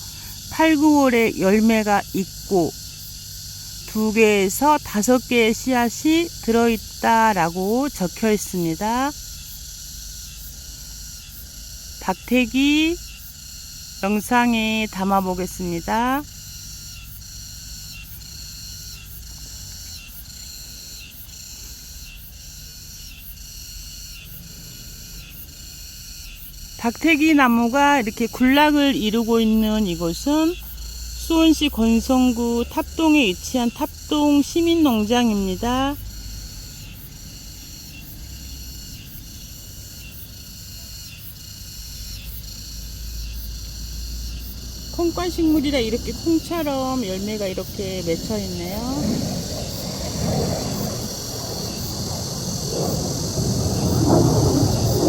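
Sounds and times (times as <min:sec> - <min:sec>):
cicada calling: 0:00.0 - 0:55.0
insects chirring: 0:00.0 - 0:55.0
low rumble: 0:47.6 - 0:55.0.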